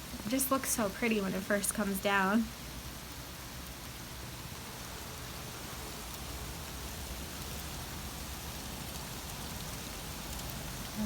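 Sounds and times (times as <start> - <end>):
snow falling hiss: 0.0 - 11.0.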